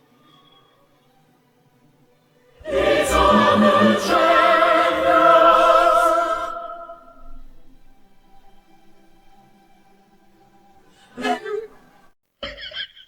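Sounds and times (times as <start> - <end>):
choir singing operatic chord: 2.6 - 9.1.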